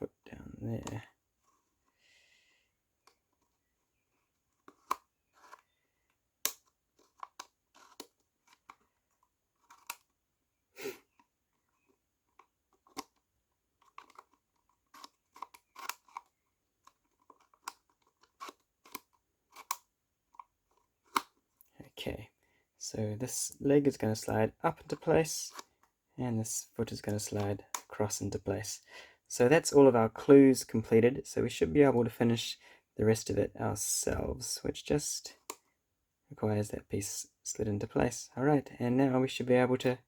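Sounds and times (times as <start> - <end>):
wooden puzzle tiles clicking: 6.4 - 10.1, 11.6 - 21.4.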